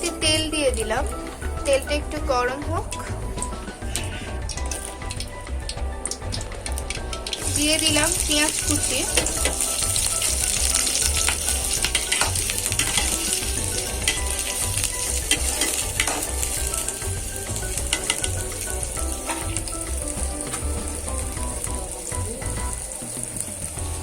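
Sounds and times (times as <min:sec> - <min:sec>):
onion sizzling in hot oil: 0:00.0 - 0:24.0
spatula scraping and clicking: 0:09.1 - 0:20.9.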